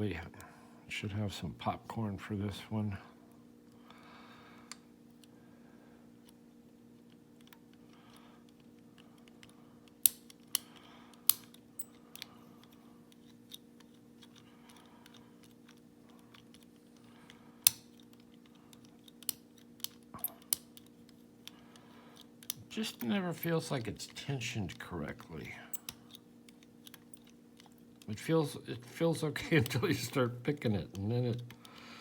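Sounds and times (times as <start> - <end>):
faint steady hum: 0.0 - 32.0
faint scraping of lock pick: 7.1 - 23.6
lock pick clicking in padlock: 9.4 - 16.7, 17.6 - 21.6.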